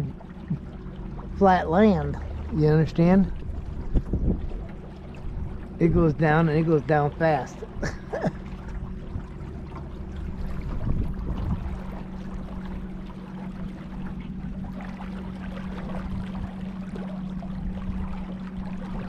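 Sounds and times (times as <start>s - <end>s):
boat motor hum: 0.0s - 19.0s
water washing along hull: 0.0s - 19.0s.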